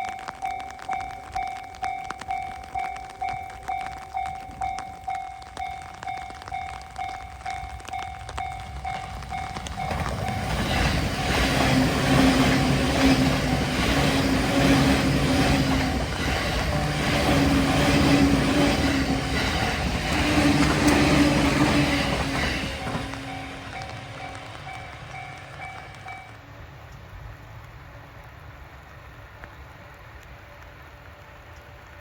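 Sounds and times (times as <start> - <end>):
level-crossing warning bell: 0.0 - 26.4
train wheels clattering over rails: 7.8 - 26.3.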